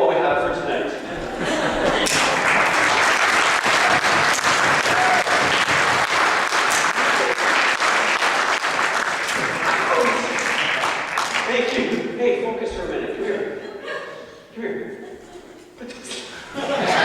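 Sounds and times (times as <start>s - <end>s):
audience applauding: 1.4s - 11.8s.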